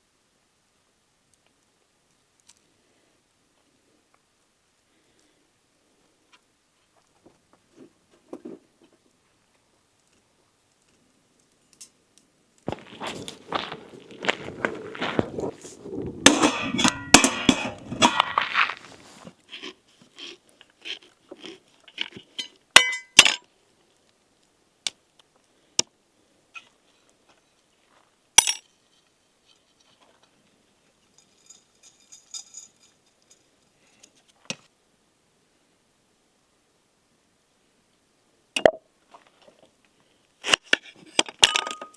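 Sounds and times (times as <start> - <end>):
utensils and dishes clattering: 16.3 - 19.2.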